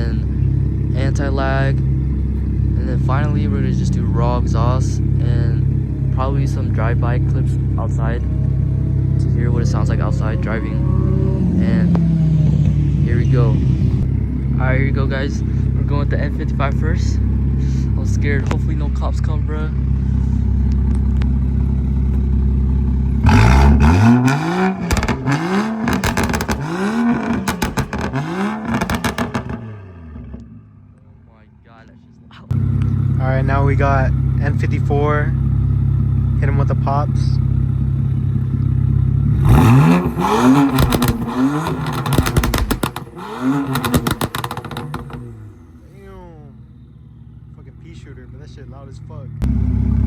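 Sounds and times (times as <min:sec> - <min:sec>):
car engine revving: 0:00.0 - 0:50.0
exhaust pops and crackles: 0:11.6 - 0:45.7.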